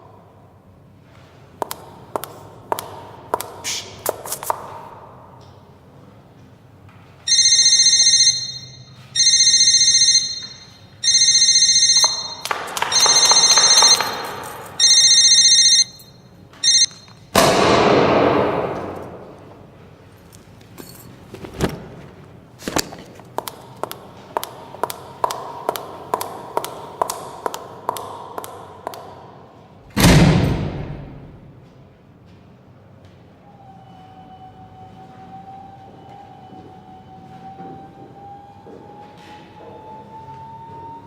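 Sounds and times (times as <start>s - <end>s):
high-heeled footsteps clicking: 1.6s - 4.9s, 11.4s - 17.0s, 22.6s - 29.7s
mobile phone ringtone: 7.3s - 17.3s.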